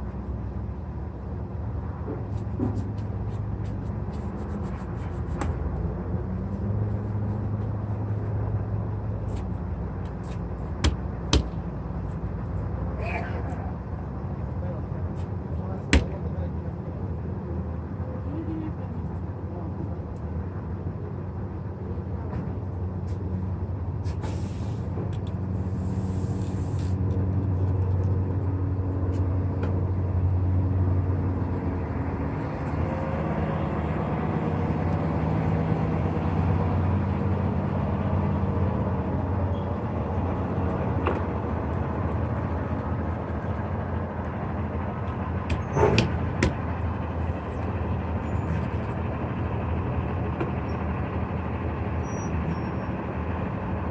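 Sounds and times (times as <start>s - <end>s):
truck engine idling: 0.0s - 53.9s
short hisses: 24.0s - 24.9s.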